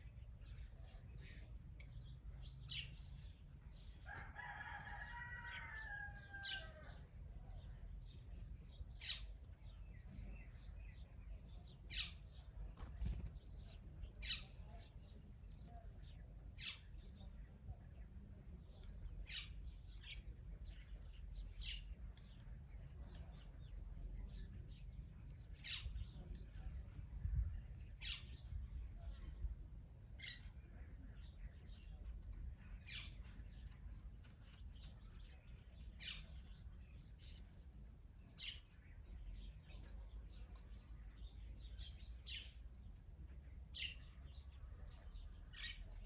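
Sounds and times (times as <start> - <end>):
birds chirping: 0.0 - 29.6, 30.2 - 46.0
faint low rumble: 0.0 - 46.0.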